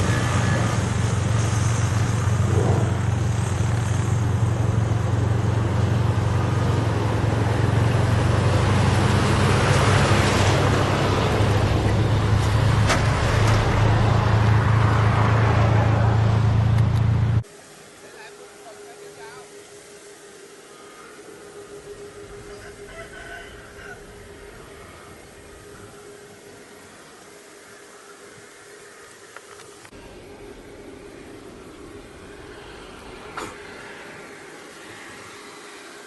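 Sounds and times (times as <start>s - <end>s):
vehicle engine hum: 0.0s - 18.0s, 19.2s - 36.0s.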